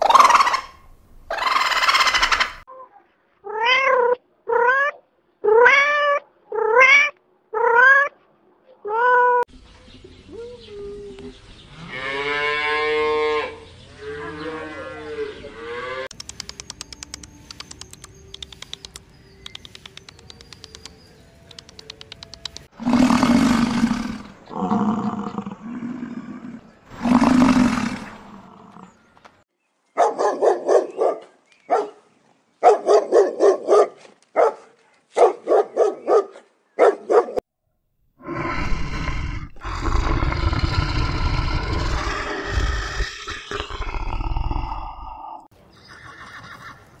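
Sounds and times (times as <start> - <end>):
rapid clicking chatter: 16.1 - 22.7
deep roar: 22.8 - 29.0, 38.2 - 45.5
long low animal calls: 38.2 - 46.1.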